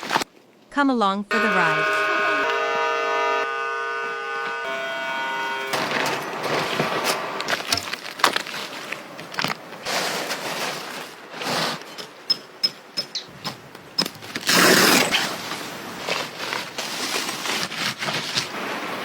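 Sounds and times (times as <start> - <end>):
rustling noise: 0.0 - 0.5, 5.7 - 19.0
knocks and clicks: 12.0 - 14.4.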